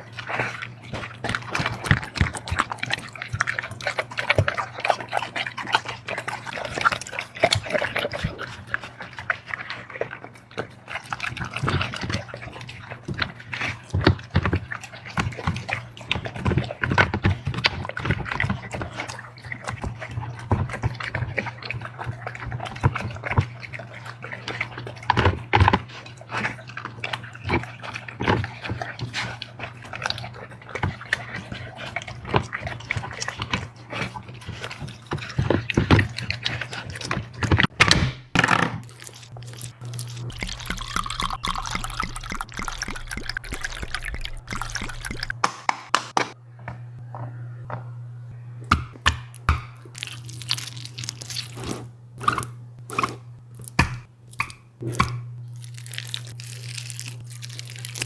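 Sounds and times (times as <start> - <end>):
dog chewing and licking: 0.0 - 37.8, 38.8 - 45.4, 49.3 - 58.0
low hum: 38.9 - 45.4.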